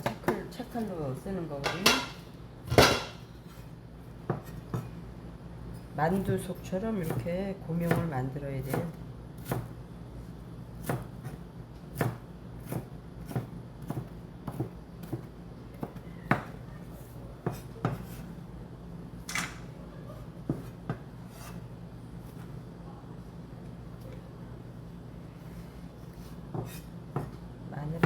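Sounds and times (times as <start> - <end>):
knife cutting on cutting board: 17.4 - 18.3, 20.5 - 21.6, 26.1 - 27.3.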